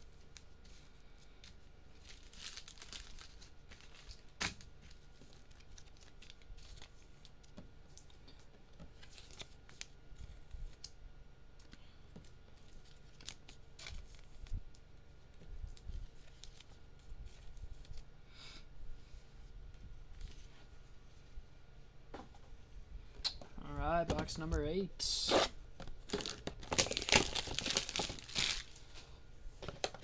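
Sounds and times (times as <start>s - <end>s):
packaging tearing and crinkling: 1.9s - 7.0s, 9.0s - 9.9s, 26.0s - 28.9s
cards rustling: 26.1s - 28.9s.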